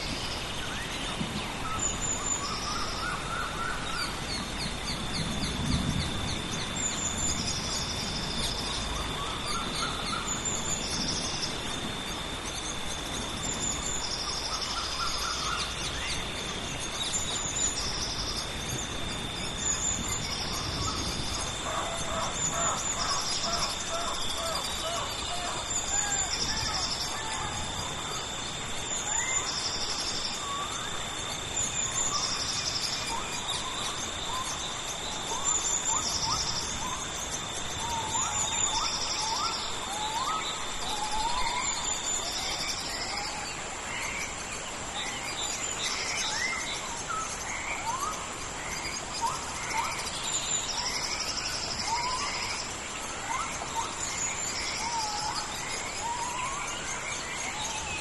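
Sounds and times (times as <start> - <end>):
rain hissing: 0.0 - 39.9
insects chorus: 0.0 - 58.0.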